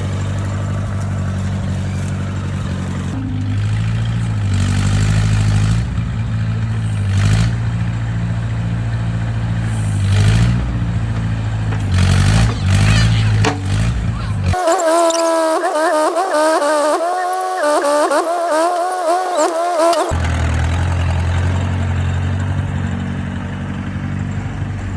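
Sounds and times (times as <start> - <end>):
engine clatter bursts: 9.2 - 21.9
tractor engine revving: 10.2 - 20.3.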